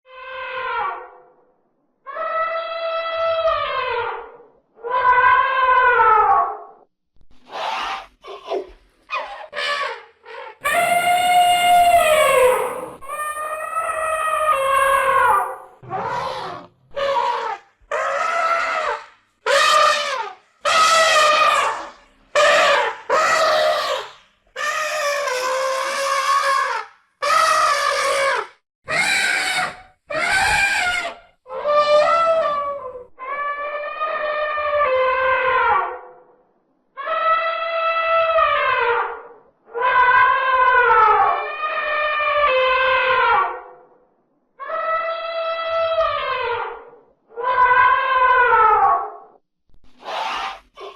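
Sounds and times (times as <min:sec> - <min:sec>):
elephant trumpeting: 0:07.5 - 0:32.8, 0:50.0 - 0:50.9.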